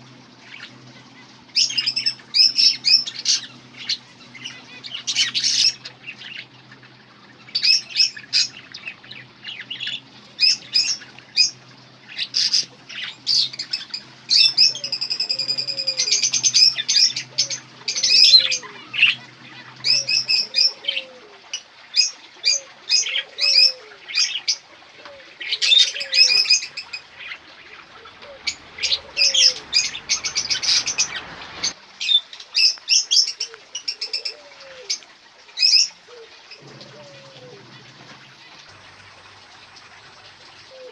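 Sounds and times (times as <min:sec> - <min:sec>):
low curved calls: 0:00.0 - 0:40.9
small birds chirping: 0:00.0 - 0:40.9
bird trill: 0:12.2 - 0:21.2, 0:25.6 - 0:31.8.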